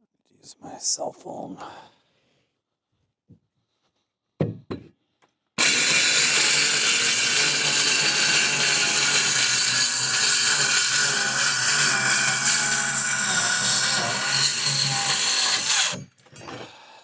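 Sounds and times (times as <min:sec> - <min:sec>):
cordless power saw cutting wood: 0:05.6 - 0:16.2.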